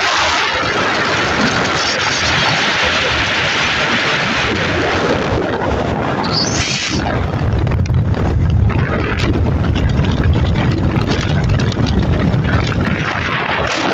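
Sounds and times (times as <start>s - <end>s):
wind buffeting microphone: 0.0s - 13.9s
motorcycle engine running: 7.0s - 13.8s.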